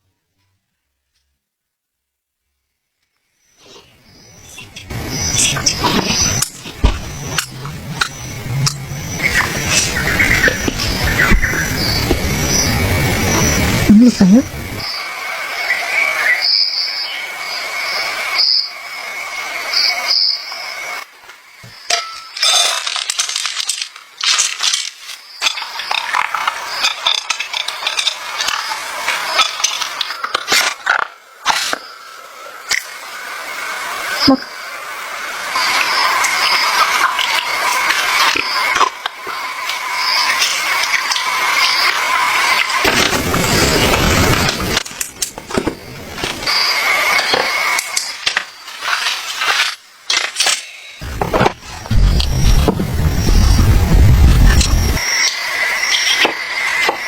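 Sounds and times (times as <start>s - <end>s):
small objects knocking and clinking: 21.9s - 28.6s
steady hiss: 31.6s - 57.0s.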